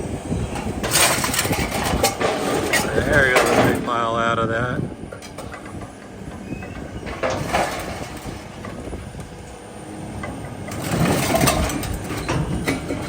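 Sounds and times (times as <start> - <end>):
heavy machine engine running: 0.0 - 13.0
scrap metal scraping and clattering: 0.5 - 4.1, 5.2 - 8.9, 10.2 - 13.0.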